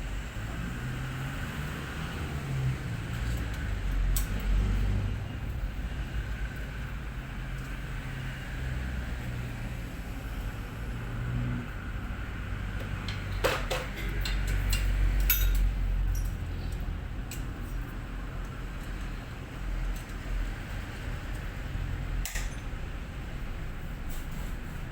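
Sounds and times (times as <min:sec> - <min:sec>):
sharp clinks and knocks: 0:12.8 - 0:16.4, 0:22.2 - 0:22.7.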